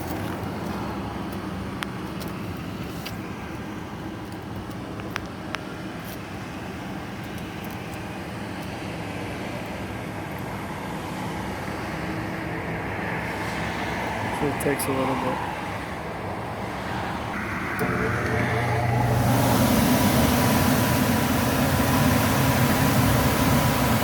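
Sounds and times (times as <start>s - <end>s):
gas furnace burners rushing: 17.4s - 24.0s.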